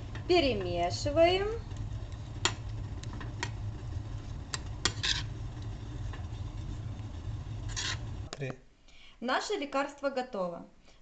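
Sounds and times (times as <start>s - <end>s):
steady low hum: 0.0s - 9.1s
spoon scraping bowl: 4.2s - 8.3s.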